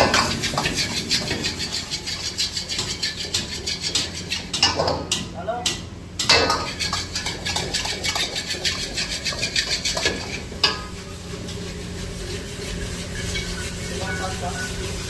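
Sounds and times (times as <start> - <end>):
metal spatula scraping a wok: 0.0 - 4.8, 6.4 - 15.0
frying hiss: 6.2 - 15.0.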